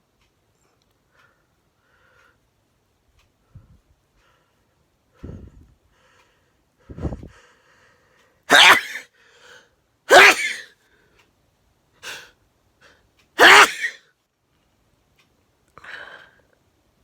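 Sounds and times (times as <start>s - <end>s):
person sneezing: 8.5s - 9.1s, 10.1s - 10.7s, 12.0s - 12.3s, 13.4s - 14.0s.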